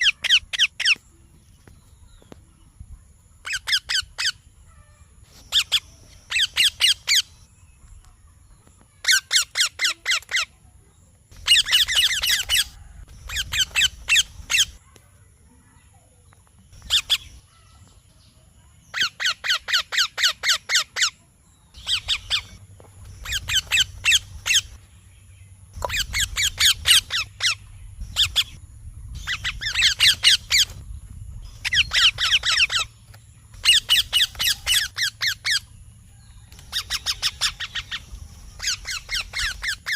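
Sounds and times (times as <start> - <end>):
parakeet chirping: 5.5 - 7.5, 11.4 - 14.8, 21.8 - 24.8, 25.8 - 30.8, 31.4 - 32.9, 33.5 - 35.7, 36.7 - 39.9.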